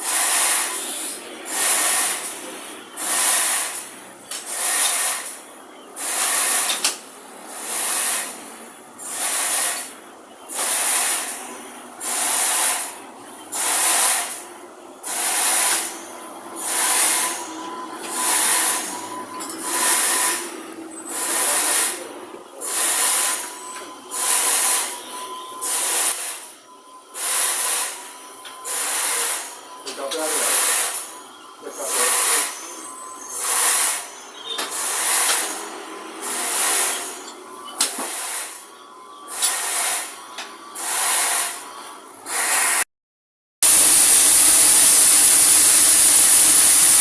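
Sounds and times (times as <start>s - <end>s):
sawmill saw cutting log: 3.0s - 3.8s, 4.5s - 5.3s, 7.5s - 8.4s, 9.0s - 9.9s, 10.5s - 11.4s, 13.5s - 14.4s, 15.1s - 23.5s, 24.1s - 26.4s, 27.2s - 28.0s, 28.6s - 34.1s, 34.7s - 37.2s, 37.9s - 38.6s, 39.3s - 40.2s, 40.8s - 42.8s, 43.6s - 47.0s.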